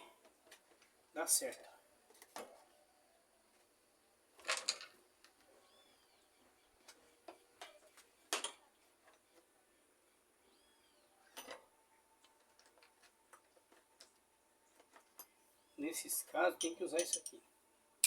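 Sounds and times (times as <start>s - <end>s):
metal hand tools clinking: 16.6s - 17.4s.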